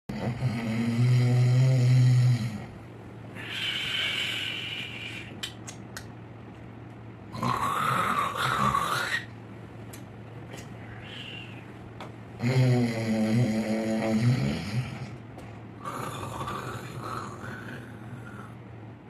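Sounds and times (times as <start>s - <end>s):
man snoring: 0.1s - 2.8s, 7.3s - 9.3s, 12.4s - 15.2s, 15.8s - 18.6s
breathy hissing: 3.3s - 5.4s, 10.8s - 11.7s
whistling breath: 3.4s - 5.4s, 10.8s - 11.7s.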